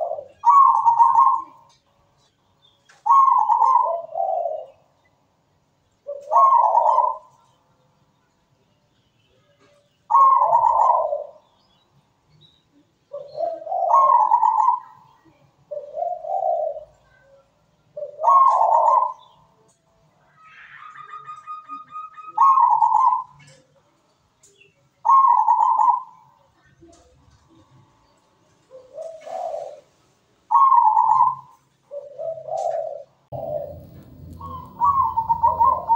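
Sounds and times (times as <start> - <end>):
zebra dove cooing: 0.0 - 1.7, 3.0 - 4.8, 6.1 - 7.4, 10.1 - 11.4, 13.1 - 15.0, 15.7 - 17.1, 18.0 - 19.4, 20.2 - 23.7, 25.0 - 26.2, 28.7 - 29.9, 30.5 - 35.9
drawn-out higher bird note: 33.3 - 35.9.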